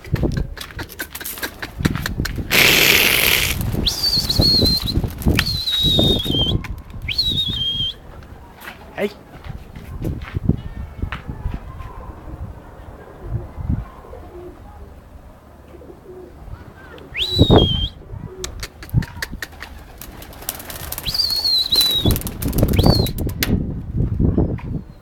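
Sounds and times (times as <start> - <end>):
pigeon wings flapping: 0.0 - 7.0, 18.6 - 23.5
short high whistles: 2.6 - 8.0, 17.2 - 18.0, 21.0 - 22.2, 22.8 - 23.2.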